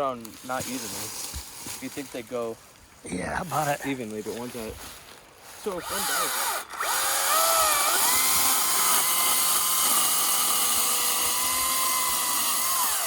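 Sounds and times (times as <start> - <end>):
electric chainsaw cutting wood: 5.8 - 13.0.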